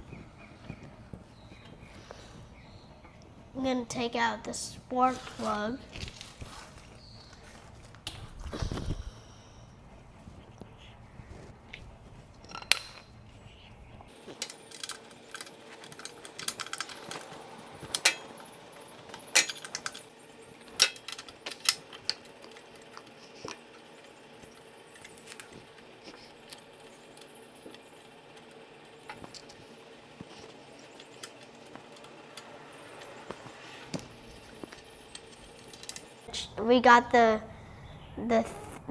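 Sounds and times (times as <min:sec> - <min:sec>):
metal tools clinking on engine: 0:12.4 - 0:13.2, 0:14.1 - 0:36.4.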